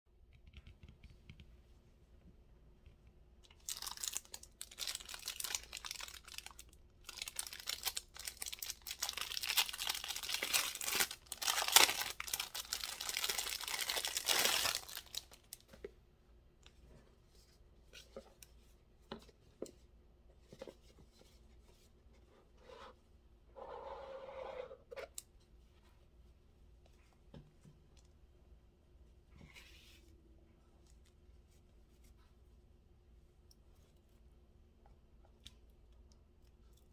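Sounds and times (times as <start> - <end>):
packaging tearing and crinkling: 3.5 - 15.5.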